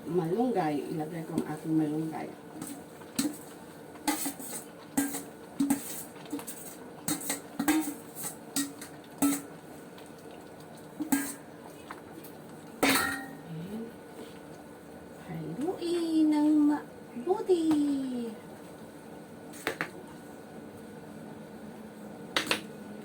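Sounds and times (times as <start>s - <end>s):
utensil scraping a cooking pot: 2.5s - 9.6s, 11.0s - 11.5s.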